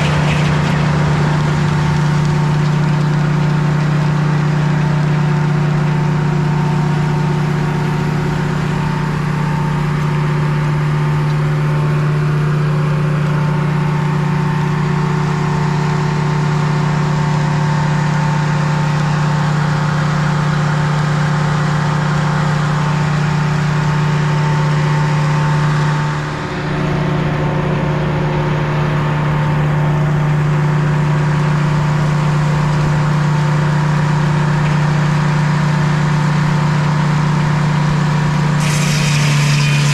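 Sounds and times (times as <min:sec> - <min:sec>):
saw whine: 0:00.0 - 0:39.9
sawmill engine running: 0:00.0 - 0:39.9.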